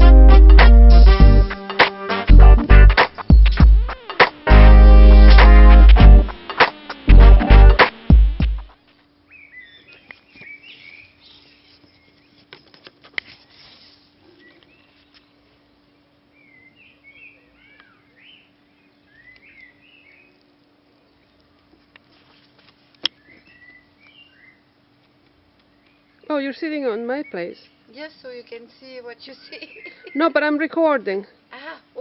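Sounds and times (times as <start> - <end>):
small birds chirping: 9.2 - 12.5, 14.2 - 21.6, 22.8 - 30.6.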